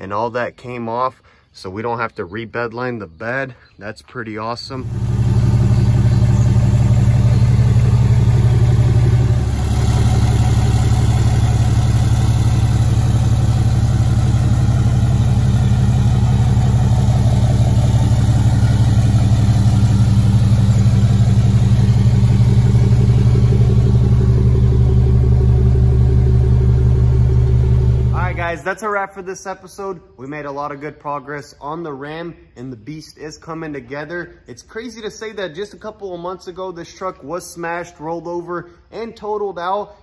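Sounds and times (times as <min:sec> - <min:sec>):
diesel engine idling: 0:04.7 - 0:28.6.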